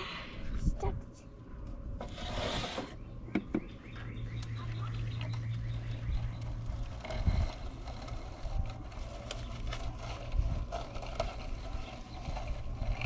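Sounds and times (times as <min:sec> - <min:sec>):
wind rumble on microphone: 0:05.6 - 0:13.0.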